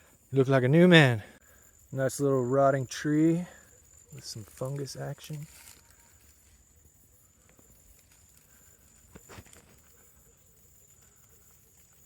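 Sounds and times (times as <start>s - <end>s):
high-pitched insect drone: 0.0s - 12.0s.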